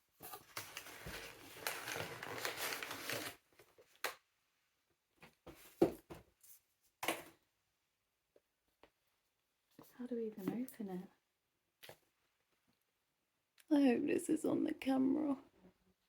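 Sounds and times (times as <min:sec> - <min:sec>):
packaging rustling: 0:00.4 - 0:04.0.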